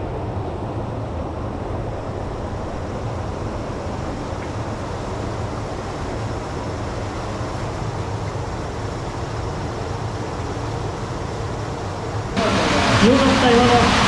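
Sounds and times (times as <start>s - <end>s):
stream water flowing: 0.0s - 14.0s.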